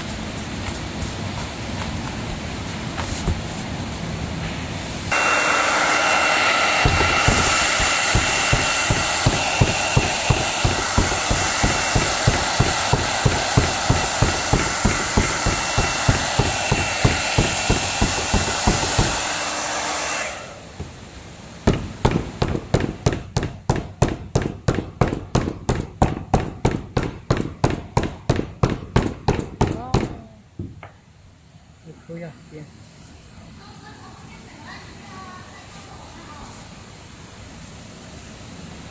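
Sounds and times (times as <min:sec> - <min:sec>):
heat gun blowing: 0:05.1 - 0:30.2
regular thumps: 0:06.8 - 0:19.2, 0:20.7 - 0:31.0
sharp taps: 0:06.8 - 0:19.2, 0:21.7 - 0:31.0.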